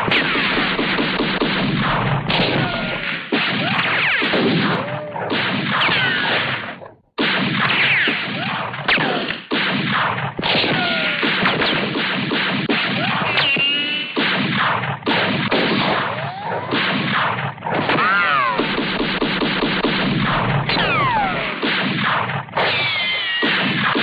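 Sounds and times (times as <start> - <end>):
gunfire: 0.0 - 24.0
whistling tones gliding: 13.2 - 14.2
crashes and impacts: 16.8 - 22.6.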